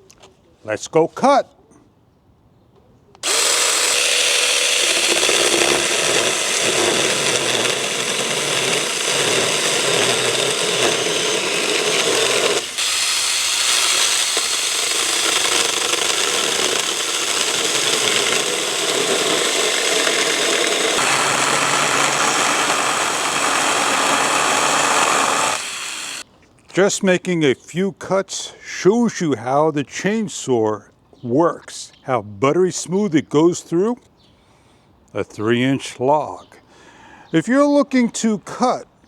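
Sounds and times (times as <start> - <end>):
chainsaw cutting log: 3.2 - 26.2.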